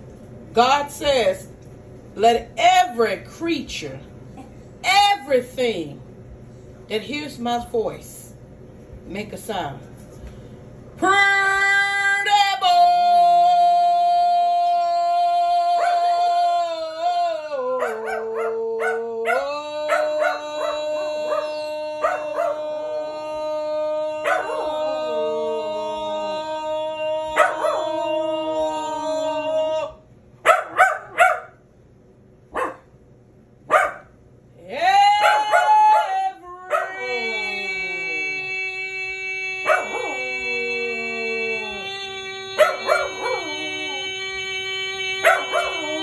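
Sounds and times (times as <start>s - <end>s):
dogs howling: 15.0s - 31.5s, 34.8s - 46.0s
dogs yipping: 17.8s - 22.6s, 24.2s - 24.8s, 27.4s - 28.0s, 30.4s - 31.5s, 32.6s - 32.8s, 33.7s - 34.1s, 35.2s - 36.1s, 39.7s - 40.2s, 42.6s - 43.5s, 45.2s - 45.9s.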